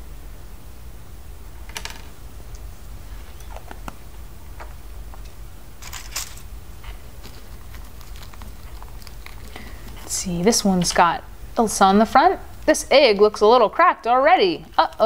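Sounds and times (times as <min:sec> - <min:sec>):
low steady hum: 0:00.0 - 0:15.0
packaging crinkling: 0:05.8 - 0:10.1.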